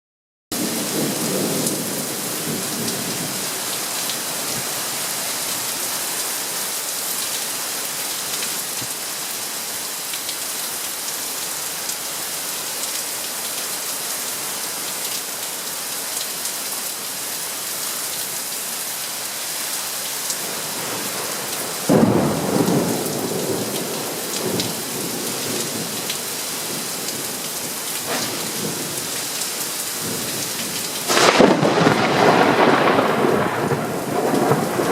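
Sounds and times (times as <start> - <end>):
steady rain: 0.5 - 34.9
thunder rumbling: 20.5 - 26.0, 28.0 - 29.3, 30.0 - 34.9
loud rolling thunderclap: 21.9 - 26.0, 28.0 - 29.1, 31.1 - 34.9.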